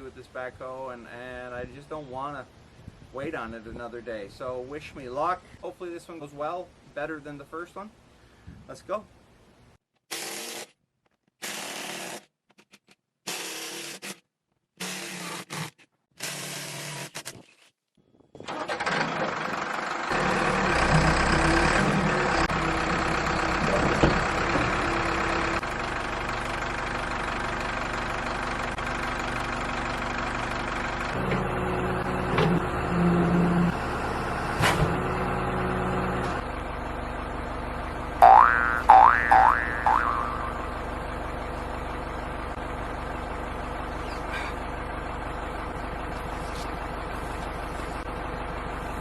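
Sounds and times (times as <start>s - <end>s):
diesel engine starting and running: 18.4s - 49.0s.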